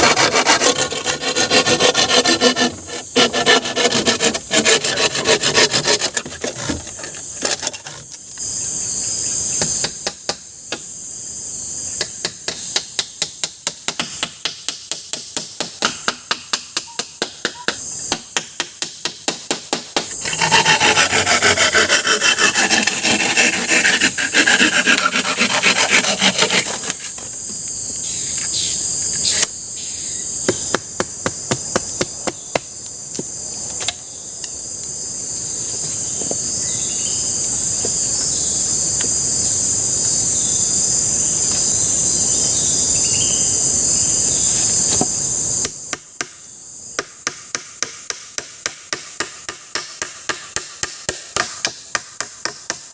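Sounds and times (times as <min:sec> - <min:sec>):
hand tool rasping wood: 0:00.0 - 0:08.2, 0:20.0 - 0:27.4
shrill insect chorus: 0:00.0 - 0:52.9
chopping strikes on wood: 0:12.0 - 0:20.2, 0:30.4 - 0:34.0, 0:47.0 - 0:52.9.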